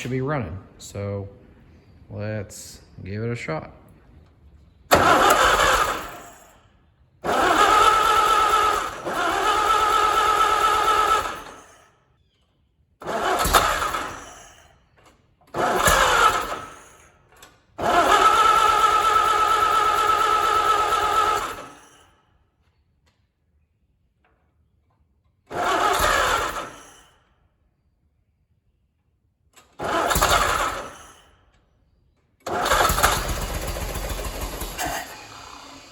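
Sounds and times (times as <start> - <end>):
engine cranking: 4.9 - 11.9, 13.0 - 22.2, 24.3 - 27.3, 29.6 - 31.7, 32.4 - 35.9.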